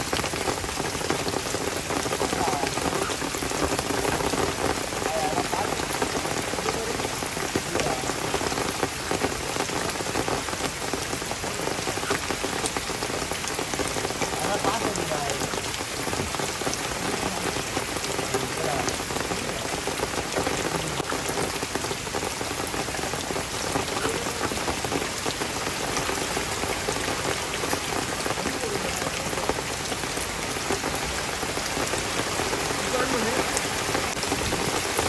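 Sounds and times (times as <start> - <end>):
heavy rain falling: 0.0 - 35.0.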